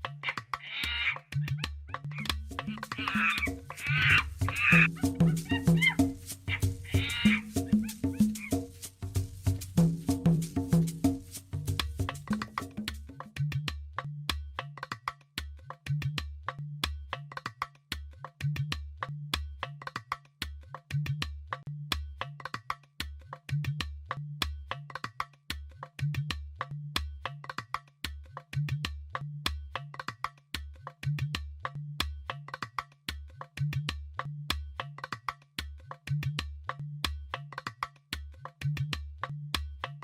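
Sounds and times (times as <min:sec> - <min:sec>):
pulsing bass line: 0:01.5 - 0:12.4.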